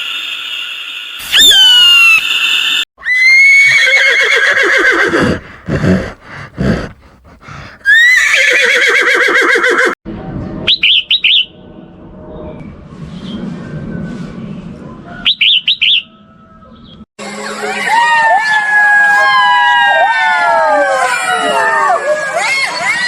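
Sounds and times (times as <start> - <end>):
horse whinnying: 3.0 - 10.0.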